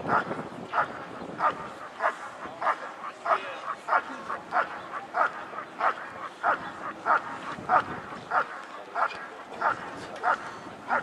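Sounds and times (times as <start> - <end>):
dog barking rhythmically: 0.0 - 11.0.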